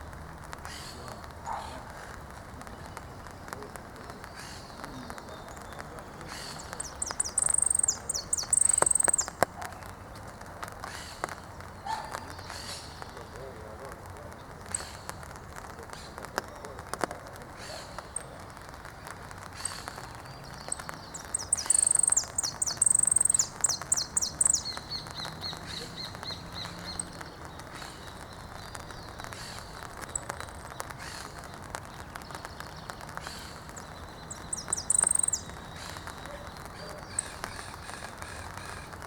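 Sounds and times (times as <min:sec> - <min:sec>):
finch singing: 0:04.2 - 0:09.9, 0:19.6 - 0:38.3.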